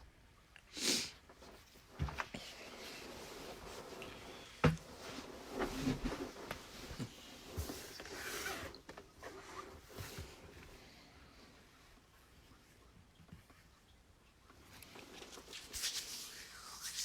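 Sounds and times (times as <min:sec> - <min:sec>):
rustling: 0:01.3 - 0:10.8, 0:14.5 - 0:17.0.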